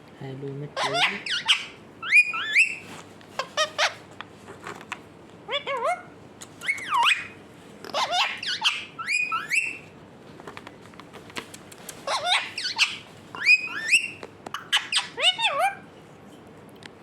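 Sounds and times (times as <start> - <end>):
parrot whistling: 1.1 - 2.8, 8.0 - 9.8, 12.1 - 15.8
faint clicks: 10.6 - 12.1.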